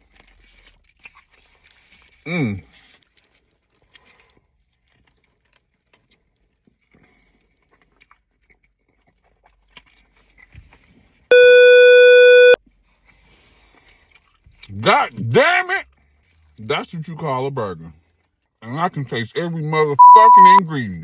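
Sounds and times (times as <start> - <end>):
faint chewing: 0.0 - 10.8
buzzy electronic beep: 11.3 - 12.6, 20.0 - 20.6.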